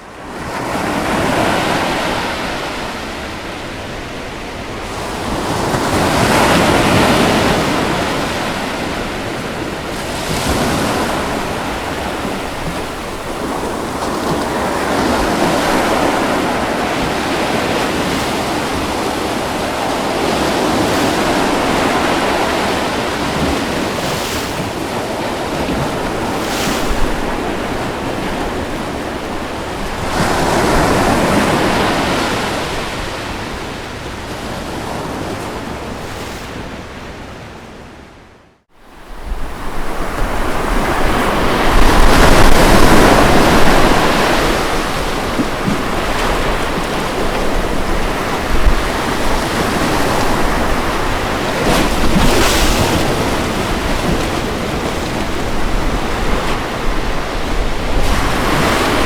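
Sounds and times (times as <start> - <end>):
ocean waves breaking: 0.0 - 59.0.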